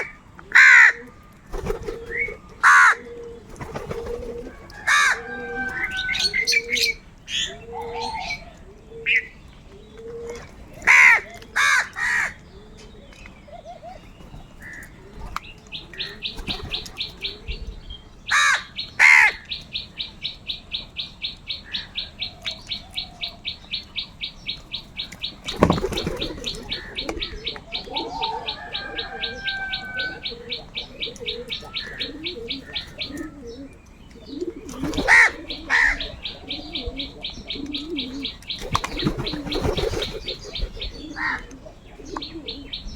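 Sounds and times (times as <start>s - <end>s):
crows cawing: 0.0s - 1.1s, 2.6s - 3.3s, 4.4s - 6.9s, 10.8s - 12.4s, 18.3s - 19.5s, 26.8s - 33.4s, 35.0s - 37.2s, 41.2s - 41.5s.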